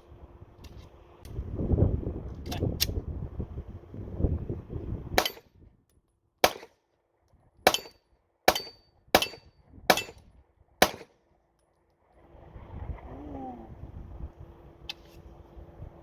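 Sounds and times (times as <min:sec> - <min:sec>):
pistol shots: 0:06.4 - 0:06.7, 0:07.7 - 0:10.2, 0:10.8 - 0:11.1.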